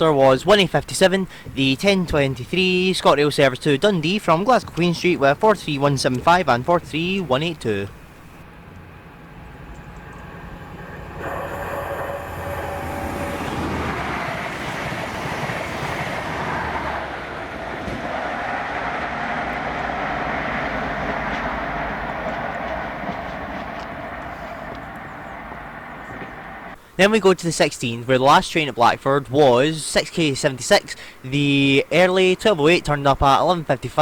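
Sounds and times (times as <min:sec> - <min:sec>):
train coaches rumbling over rails: 0:00.0 - 0:26.8
diesel train engine hum: 0:00.0 - 0:27.0.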